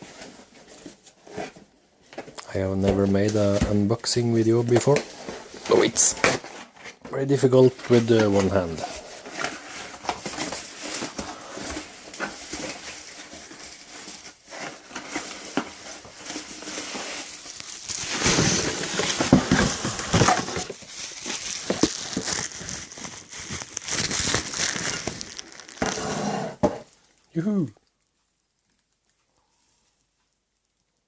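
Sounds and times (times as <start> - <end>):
packaging crinkling and rustling: 0.0 - 31.0
packaging tearing: 4.9 - 26.3.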